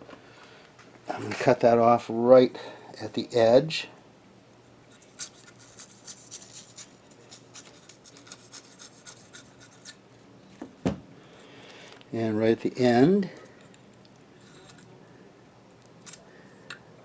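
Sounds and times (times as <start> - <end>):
tape scratching and rubbing: 4.9 - 10.0.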